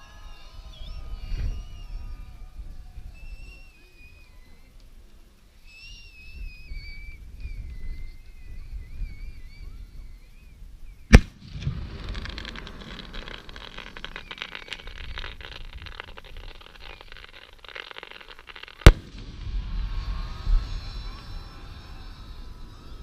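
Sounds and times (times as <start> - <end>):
firework whistle: 5.7 - 10.4, 11.1 - 23.0
firework bang: 11.1 - 22.7
firework crackling: 11.1 - 23.0.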